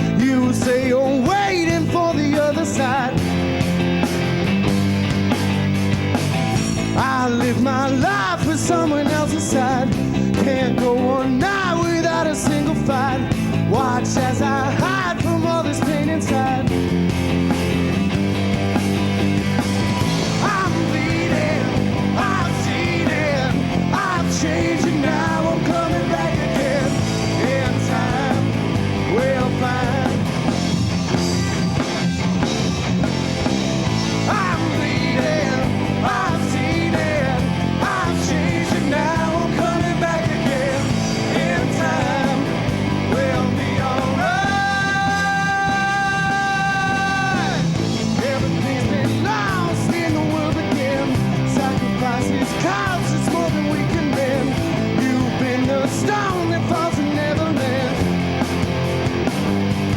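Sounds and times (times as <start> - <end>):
bass guitar: 0.0 - 59.9
drums: 0.0 - 59.9
electric guitars: 0.0 - 59.9
person singing or yelling: 7.0 - 16.7, 20.3 - 30.2, 34.2 - 58.1.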